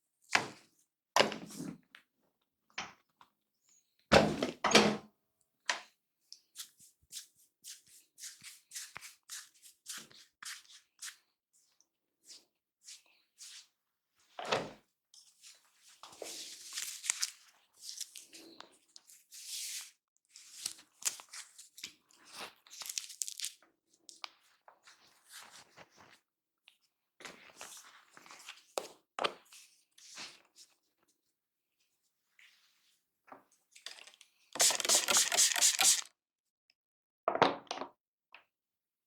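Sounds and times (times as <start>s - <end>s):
hands rubbing hair and scalp: 34.6s - 36.1s.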